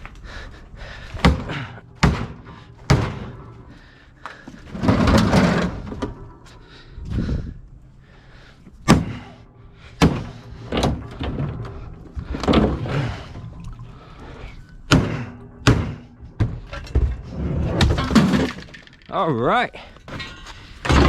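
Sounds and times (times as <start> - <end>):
sledgehammer striking a refrigerator: 1.2 - 3.4, 8.9 - 9.3, 10.0 - 11.0, 14.9 - 16.7, 20.1 - 21.0.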